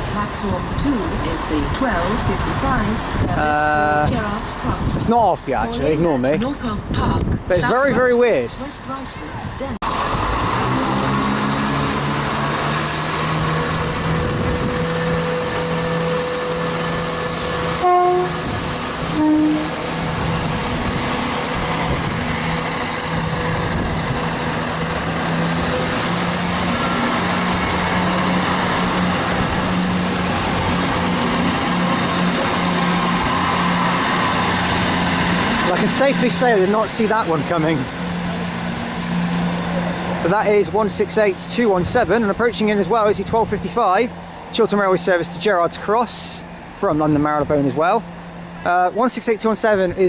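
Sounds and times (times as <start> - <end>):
train engine drone: 0.0 - 50.0
train horn blasts: 14.0 - 20.2.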